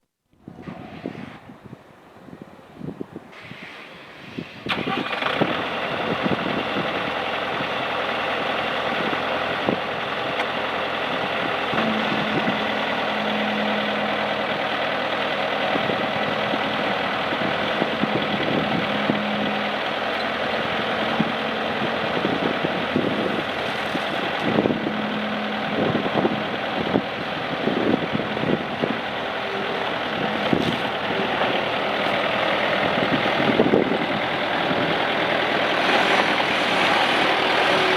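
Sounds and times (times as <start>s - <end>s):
diesel engine idling: 3.4s - 37.9s
knocks and clunks: 29.7s - 32.3s.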